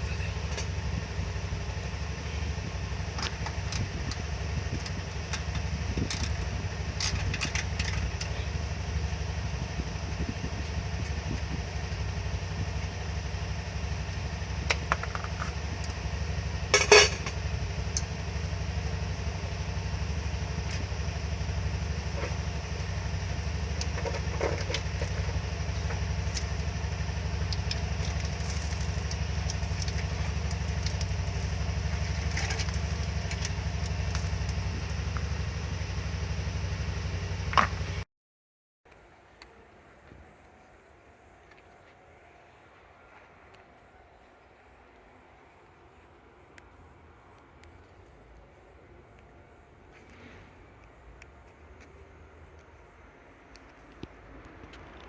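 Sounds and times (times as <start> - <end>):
small engine idling: 0.0 - 38.0.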